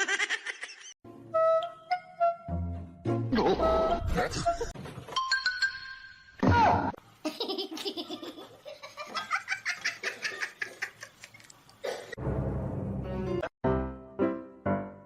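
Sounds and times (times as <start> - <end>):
piano music: 12.3 - 15.0.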